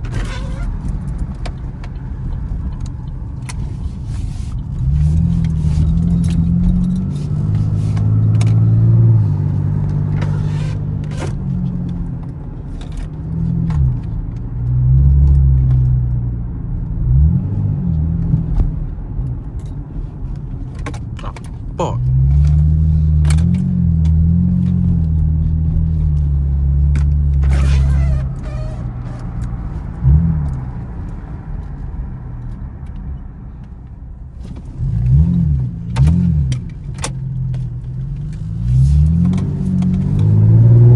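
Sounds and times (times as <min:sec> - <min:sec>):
car engine revving: 0:03.4 - 0:12.1, 0:21.2 - 0:31.4, 0:34.6 - 0:40.9.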